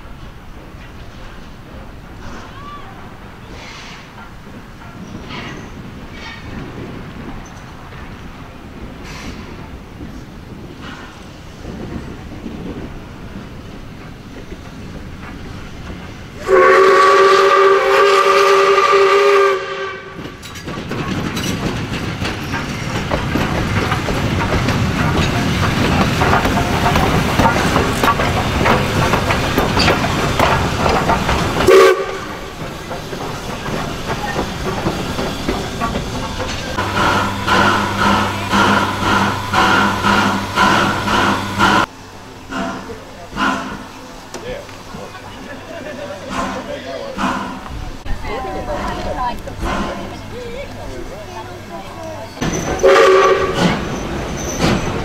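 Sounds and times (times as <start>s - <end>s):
wheels clicking over rail joints: 0.2s - 17.7s, 20.1s - 41.9s, 42.5s - 55.0s
steam hissing: 3.3s - 7.8s, 8.4s - 55.0s
steam locomotive chime whistle: 16.4s - 20.2s, 31.7s - 32.4s, 52.6s - 53.7s.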